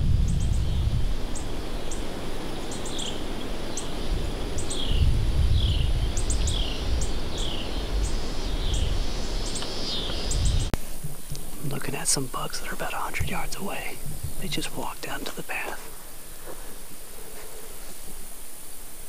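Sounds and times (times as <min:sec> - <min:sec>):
strong wind buffeting microphone: 0:00.0 - 0:15.2
bird calling: 0:00.3 - 0:10.7.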